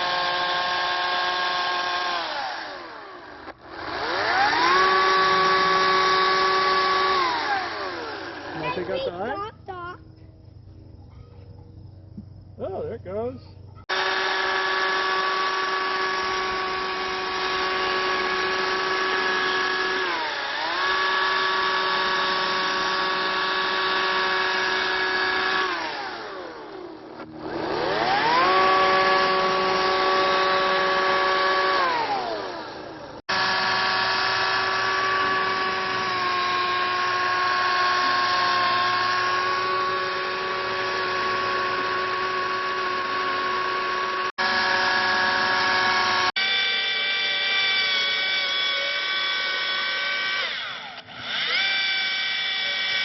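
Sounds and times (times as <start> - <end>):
electric chainsaw cutting pumpkin: 0.0 - 9.9, 13.9 - 53.0.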